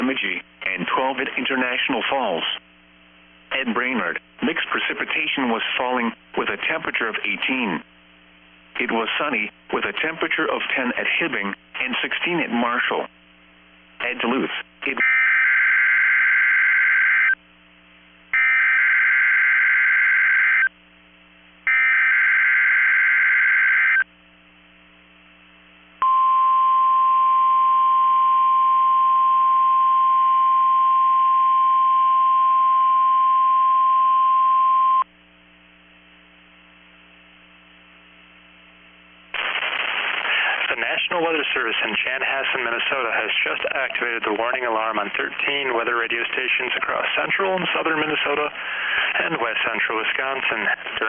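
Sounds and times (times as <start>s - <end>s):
radio hum: 0.0s - 27.1s, 34.8s - 51.0s
steady warning alarm tone: 18.4s - 20.7s, 21.7s - 24.0s
screechy data bursts: 39.4s - 40.6s.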